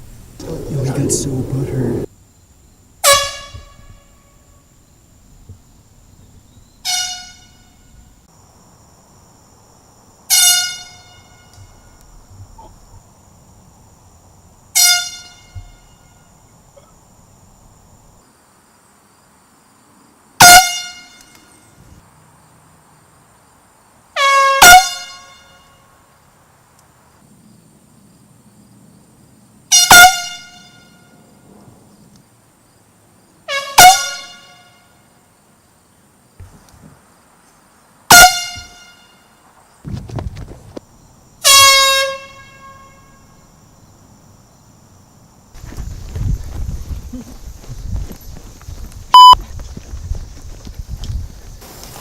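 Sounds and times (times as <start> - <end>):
handheld air horn blasts: 3.0 - 4.4, 6.8 - 7.8, 10.3 - 11.7, 14.8 - 16.2, 20.4 - 21.4, 24.2 - 25.8, 29.7 - 31.1, 33.5 - 34.9, 38.1 - 39.2, 41.4 - 43.4, 49.1 - 49.4.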